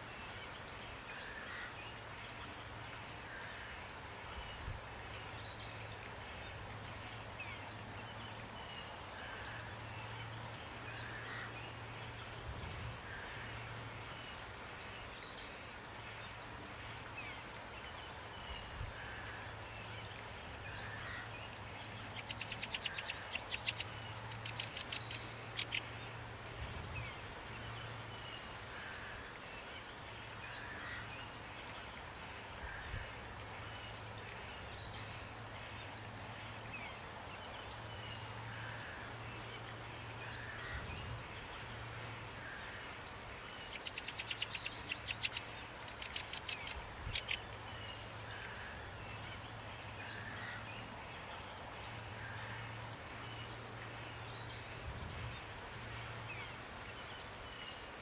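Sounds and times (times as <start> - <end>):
rain hiss: 0.0 - 58.0
songbirds chirping: 0.0 - 58.0.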